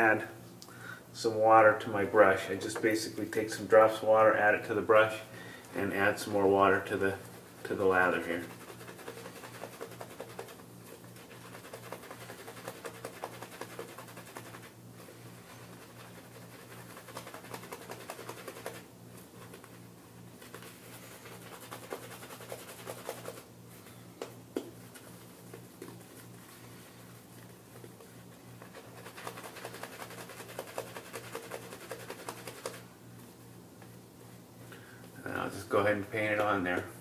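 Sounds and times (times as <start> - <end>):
low steady hum: 0.0 - 37.0
shaving brush swishing lather: 5.8 - 23.9, 24.9 - 32.9.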